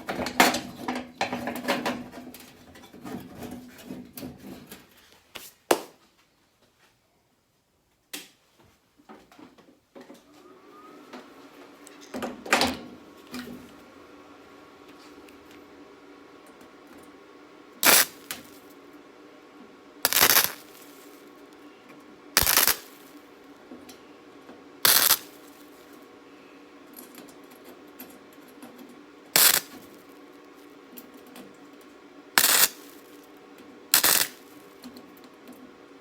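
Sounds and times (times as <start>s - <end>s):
machine hum: 12.8s - 36.0s
crackling welding arc: 17.8s - 18.7s, 20.1s - 21.3s, 22.4s - 23.2s, 24.8s - 25.9s, 29.4s - 30.1s, 32.4s - 33.3s, 33.9s - 34.8s.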